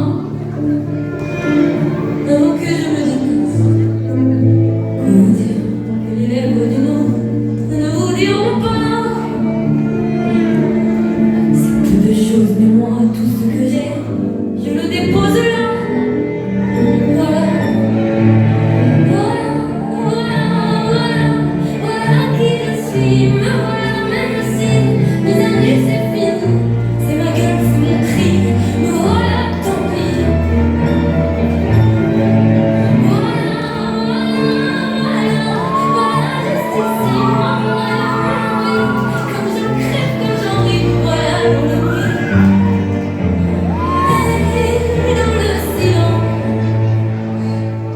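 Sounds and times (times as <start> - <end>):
woman singing slow song: 33.0 - 42.6.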